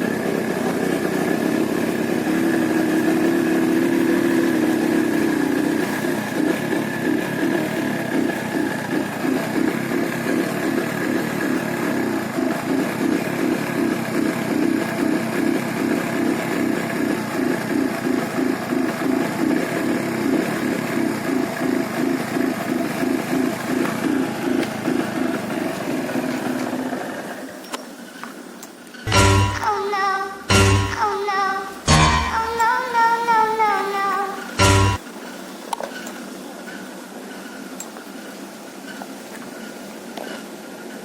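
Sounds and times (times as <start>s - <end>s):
small engine running: 0.0s - 27.4s, 34.5s - 35.0s.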